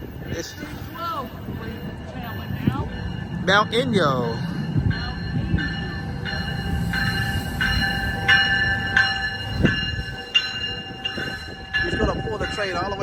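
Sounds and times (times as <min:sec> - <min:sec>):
train bell ringing: 0:00.0 - 0:13.0
train rumbling along track: 0:00.0 - 0:13.0.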